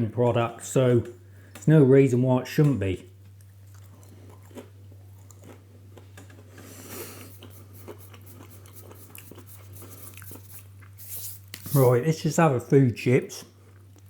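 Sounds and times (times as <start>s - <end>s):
steady low hum: 0.0s - 14.0s
person chewing: 3.3s - 11.7s, 13.6s - 14.0s.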